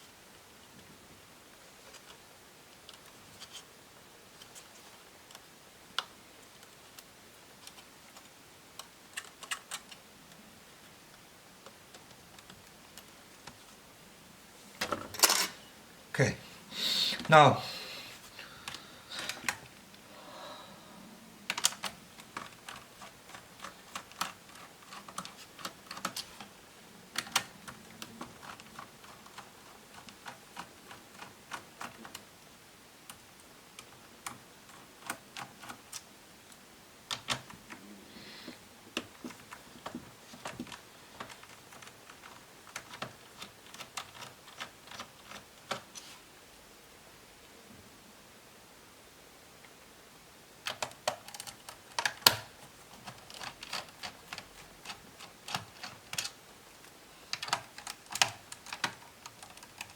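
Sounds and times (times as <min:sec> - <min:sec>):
clicks of plastic laptop parts: 0:50.7 - 0:56.4.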